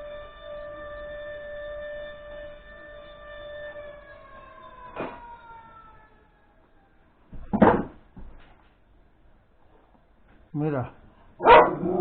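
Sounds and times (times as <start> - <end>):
siren winding down: 0.0 - 7.1.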